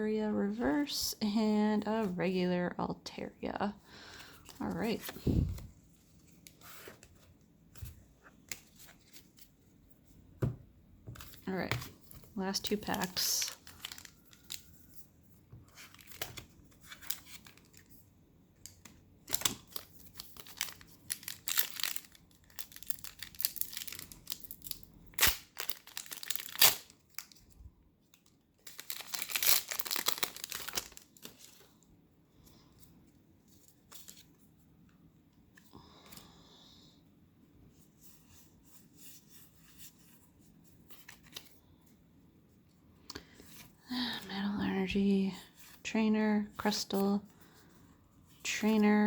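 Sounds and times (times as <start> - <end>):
foil wrapper tearing and crinkling: 12.9 - 14.6, 19.3 - 27.4, 28.6 - 31.6.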